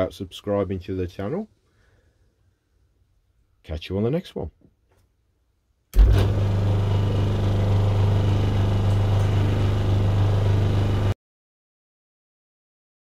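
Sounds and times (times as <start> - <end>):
bench grinder motor humming: 6.0 - 11.2.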